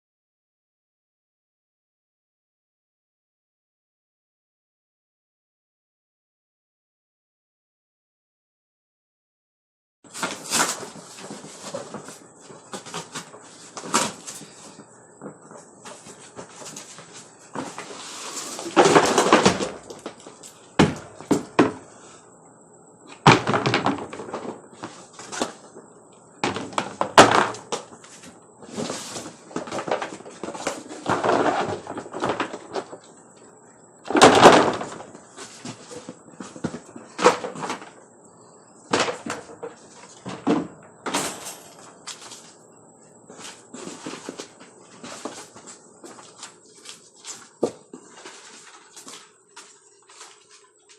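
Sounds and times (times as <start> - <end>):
plastic panels knocking and scraping: 10.1 - 21.9, 23.2 - 25.6, 26.4 - 33.1, 38.9 - 42.4
loud plastic bumps: 18.6 - 21.9, 23.2 - 25.6, 26.4 - 33.0, 34.1 - 38.0.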